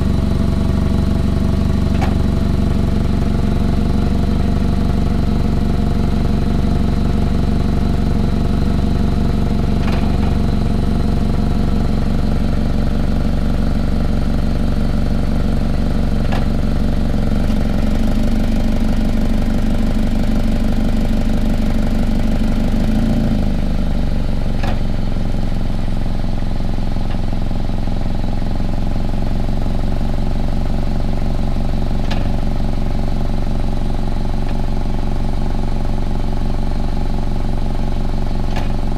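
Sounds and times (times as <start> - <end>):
car engine idling: 0.0 - 38.9.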